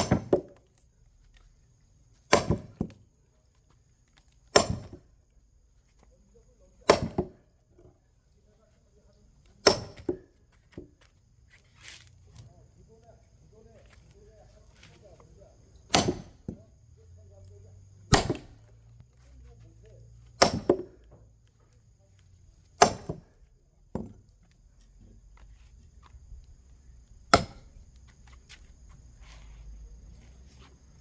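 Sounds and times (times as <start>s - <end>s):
axe chopping wood: 0.0s - 0.7s, 2.3s - 3.0s, 4.5s - 5.1s, 6.8s - 7.5s, 9.6s - 11.0s, 15.8s - 16.7s, 18.1s - 18.6s, 20.3s - 21.2s, 22.8s - 24.2s, 27.3s - 27.8s.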